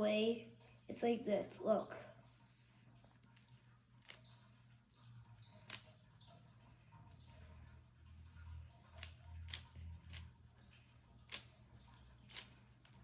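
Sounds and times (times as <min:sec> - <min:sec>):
plastic puzzle cube clicks: 0:12.3 - 0:13.0.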